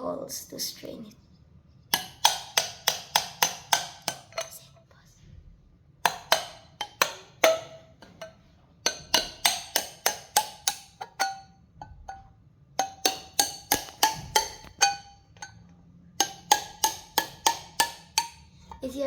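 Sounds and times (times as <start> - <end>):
nail knocked through tin can: 1.9 - 4.5, 6.0 - 11.5, 12.8 - 15.1, 16.2 - 18.4.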